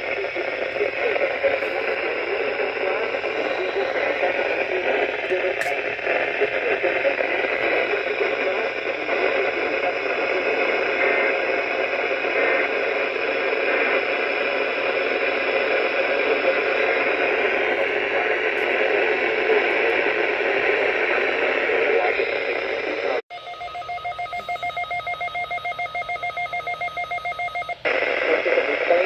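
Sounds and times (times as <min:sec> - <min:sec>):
radio static hiss: 0:00.0 - 0:23.2, 0:27.7 - 0:29.0.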